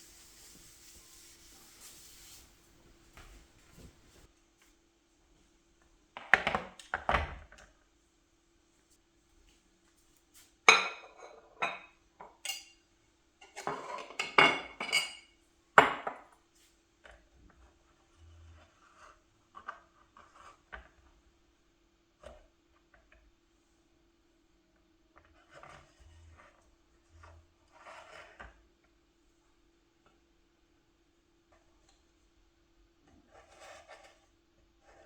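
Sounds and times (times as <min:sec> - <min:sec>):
dishes and utensils clinking: 0:13.4 - 0:15.3.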